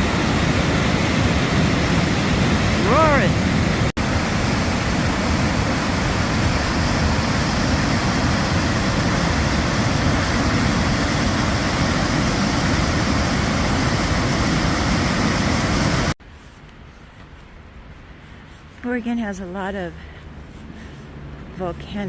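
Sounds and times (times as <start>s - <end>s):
waterfall roaring: 0.0s - 16.2s.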